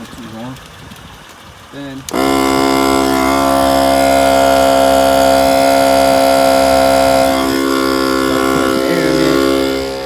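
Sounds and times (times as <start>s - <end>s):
air compressor buzzing: 2.0s - 10.0s.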